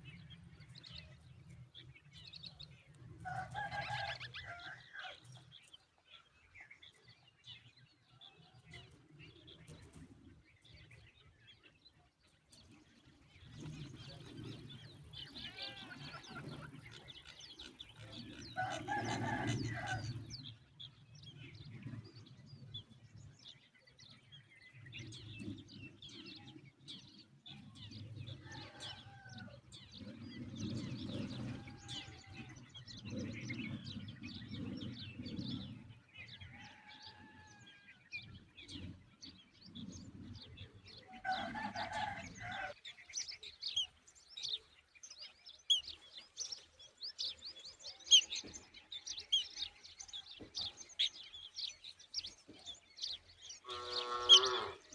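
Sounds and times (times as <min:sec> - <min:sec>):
small birds chirping: 0:38.2 - 0:54.9
gliding whistled bird calls: 0:53.6 - 0:54.8.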